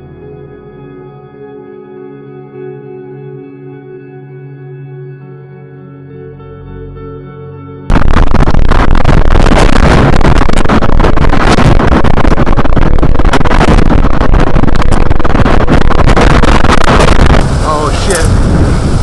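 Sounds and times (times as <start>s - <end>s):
soft ambient music: 0.0s - 7.9s
wind buffeting microphone: 7.9s - 19.0s.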